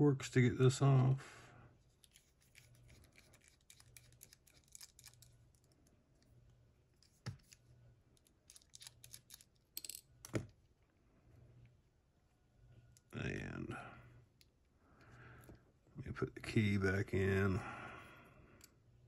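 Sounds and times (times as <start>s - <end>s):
metal tools clicking on a lock: 8.5s - 10.1s.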